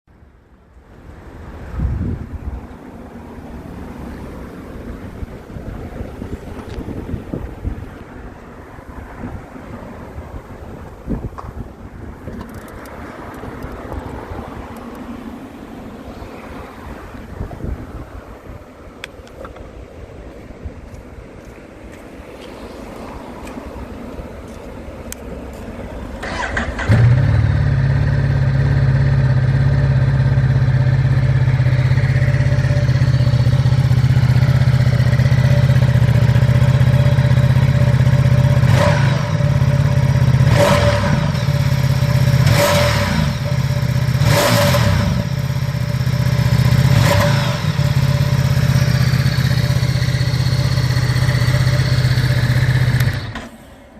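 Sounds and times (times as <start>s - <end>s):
motorcycle engine idling: 26.8s - 42.5s, 45.1s - 53.5s.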